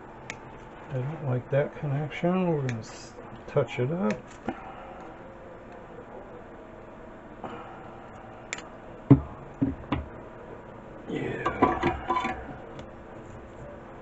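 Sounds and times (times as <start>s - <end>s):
tools rattling and clattering: 11.5s - 12.5s.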